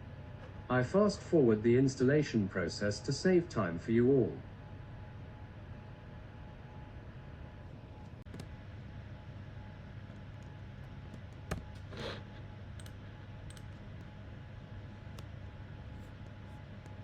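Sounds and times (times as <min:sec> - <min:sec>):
low room hum: 0:00.0 - 0:17.0
faint clicks: 0:12.7 - 0:14.1.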